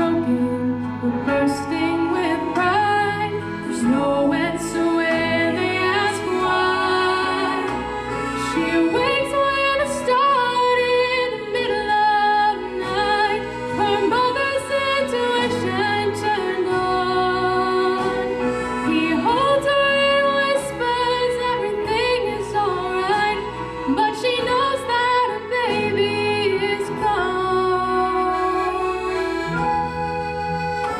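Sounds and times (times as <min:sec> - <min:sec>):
instrumental accompaniment: 0:00.0 - 0:30.9.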